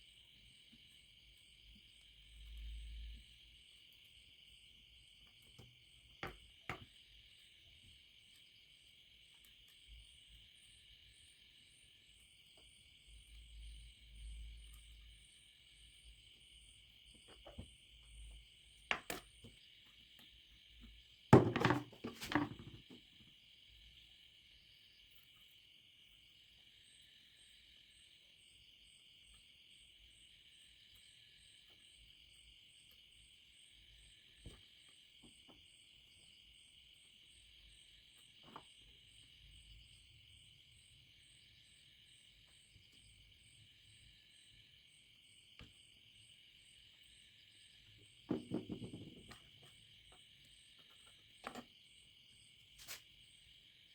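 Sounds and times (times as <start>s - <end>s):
faint high-pitched hiss: 0.0s - 53.9s
small objects knocking on a surface: 18.9s - 19.5s, 21.4s - 23.0s, 48.3s - 49.7s.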